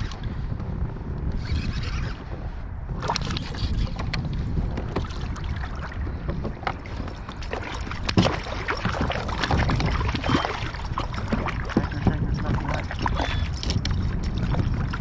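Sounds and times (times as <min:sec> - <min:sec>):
wind buffeting microphone: 0:00.0 - 0:15.0
water splashing: 0:04.9 - 0:15.0.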